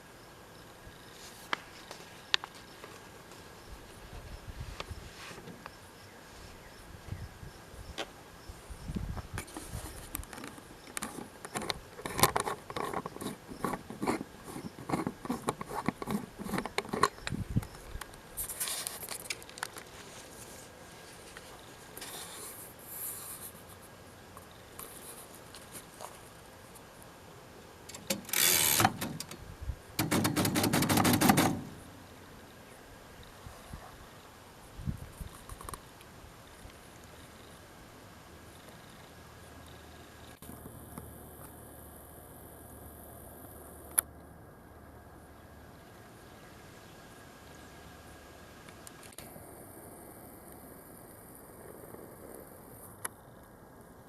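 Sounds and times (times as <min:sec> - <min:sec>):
rapid typewriter clicking: 0:30.0 - 0:31.7
typewriter keystrokes: 0:30.0 - 0:31.7.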